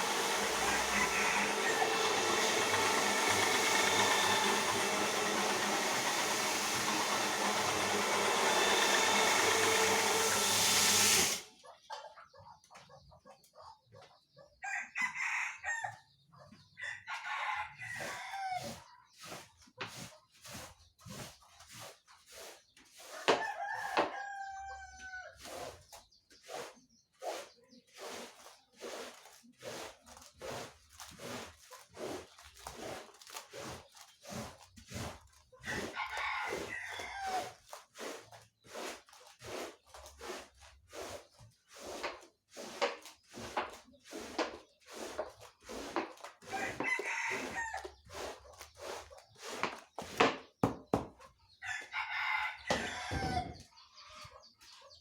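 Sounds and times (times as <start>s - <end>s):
rooster crowing: 0.6s - 2.6s, 16.9s - 18.6s, 23.4s - 25.4s, 35.7s - 37.5s, 46.5s - 47.9s, 51.6s - 53.6s.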